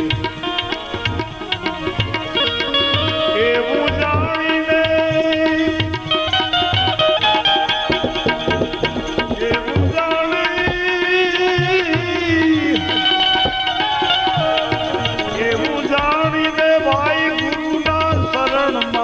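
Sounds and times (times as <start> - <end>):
tabla strokes: 0.0 - 19.0
person singing: 3.0 - 6.2.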